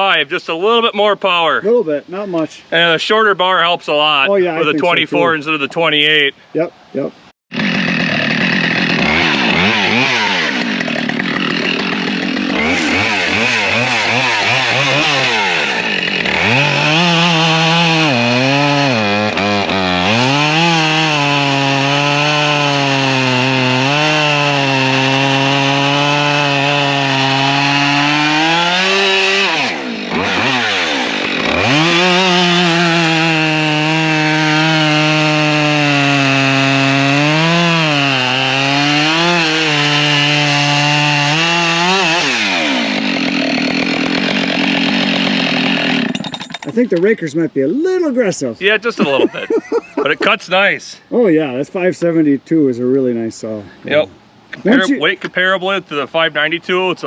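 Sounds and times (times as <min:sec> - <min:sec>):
chainsaw cutting through log: 0:07.5 - 0:46.9, 0:49.0 - 0:50.4, 0:54.6 - 0:54.9.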